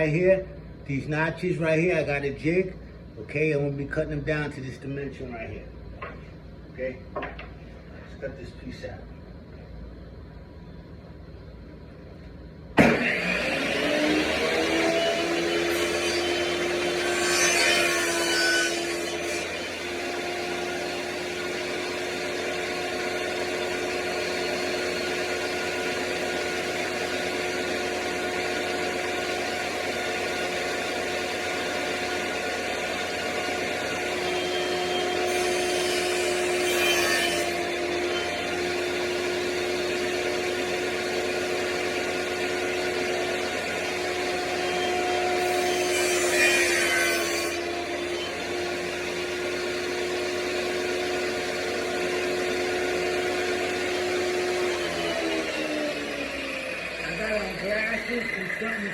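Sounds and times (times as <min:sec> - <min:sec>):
table saw motor whine: 0:12.6 - 0:58.9
saw blade cutting wood: 0:12.8 - 0:39.4, 0:41.3 - 0:58.9.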